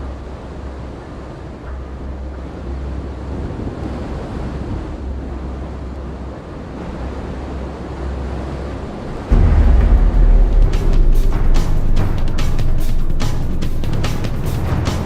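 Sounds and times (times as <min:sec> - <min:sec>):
wind on microphone: 0:02.3 - 0:14.9
low rumble: 0:09.1 - 0:15.0
loud deep sound: 0:09.3 - 0:14.8.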